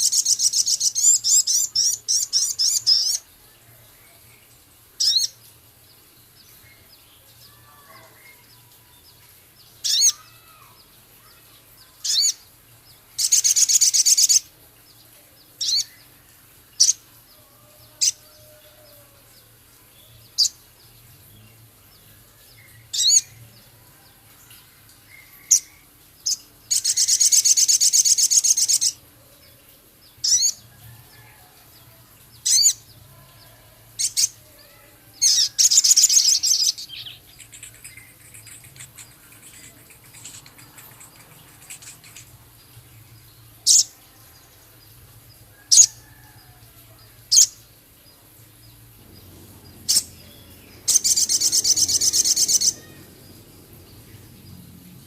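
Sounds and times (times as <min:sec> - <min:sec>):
bird harsh chattering trill: 0:37.4 - 0:42.3.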